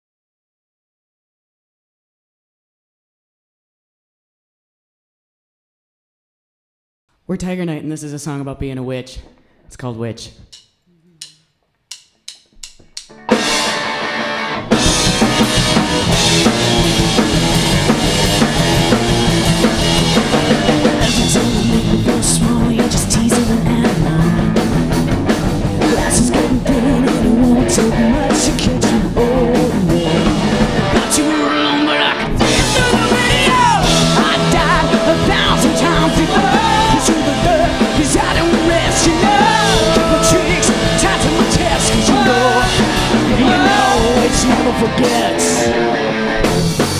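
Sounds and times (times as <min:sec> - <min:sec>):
rock band playing live: 0:12.6 - 0:46.9.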